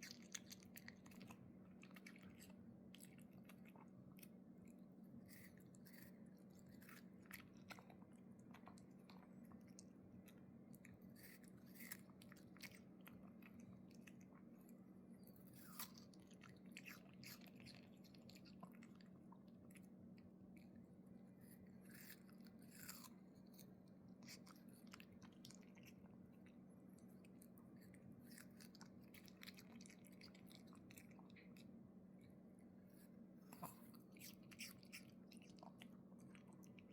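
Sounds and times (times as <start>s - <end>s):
dog chewing: 0.0s - 36.9s
faint steady hum: 0.0s - 36.9s.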